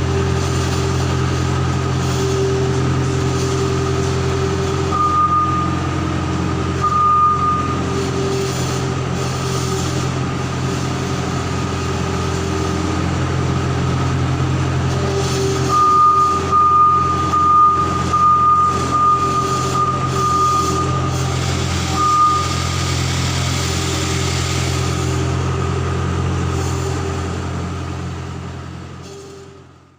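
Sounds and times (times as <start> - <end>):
diesel engine running: 0.0 - 29.9
reversing alarm beeping: 1.9 - 8.9, 15.2 - 25.5.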